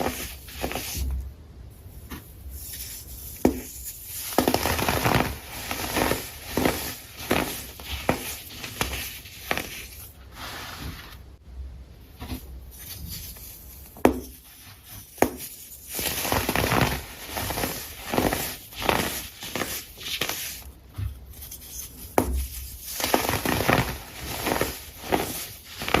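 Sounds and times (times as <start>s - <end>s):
crunching: 14.8s - 26.0s.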